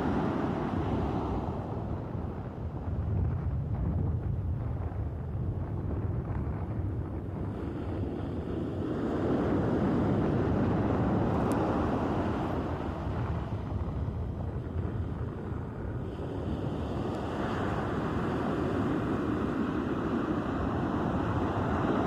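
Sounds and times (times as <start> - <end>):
sea surf washing onto shore: 0.0 - 2.3, 8.5 - 14.1, 16.1 - 22.0
wind rumble on microphone: 0.0 - 22.0.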